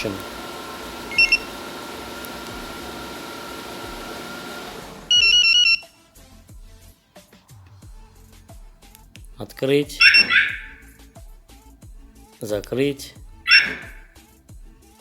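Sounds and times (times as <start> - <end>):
car engine running: 0.0 - 5.7, 10.0 - 10.9, 13.2 - 14.1
key fob beeping melody: 0.0 - 5.9, 10.0 - 10.9, 13.4 - 14.1.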